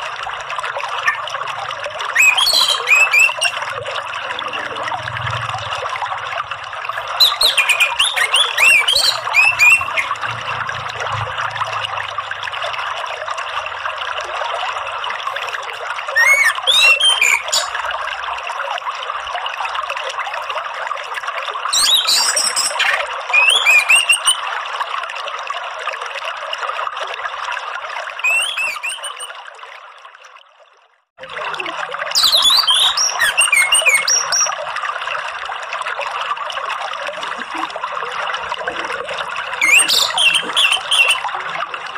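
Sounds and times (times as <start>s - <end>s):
running water trickling: 0.0s - 41.9s.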